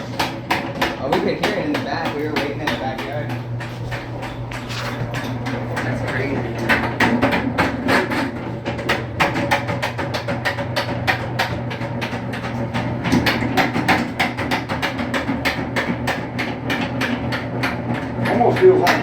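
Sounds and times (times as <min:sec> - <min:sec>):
drain cleaning machine motor hum: 0:00.0 - 0:19.0
spinning cable clacking: 0:00.0 - 0:19.0.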